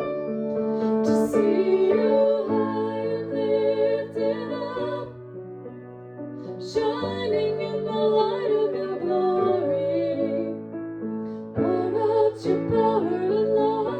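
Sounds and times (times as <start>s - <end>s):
woman singing a slow hymn: 0.8s - 5.1s, 6.6s - 10.6s, 11.6s - 13.9s.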